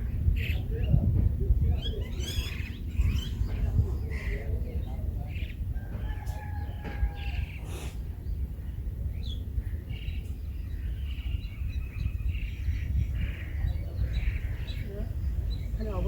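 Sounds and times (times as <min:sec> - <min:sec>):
birds chirping: 0:01.6 - 0:16.0.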